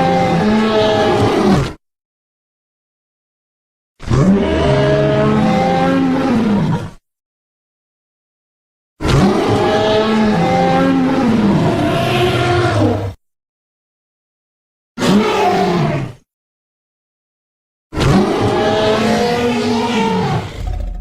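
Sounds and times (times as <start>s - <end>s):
dinosaur roar: 0.0s - 1.8s, 4.0s - 7.0s, 9.0s - 13.2s, 15.0s - 16.2s, 18.0s - 21.0s.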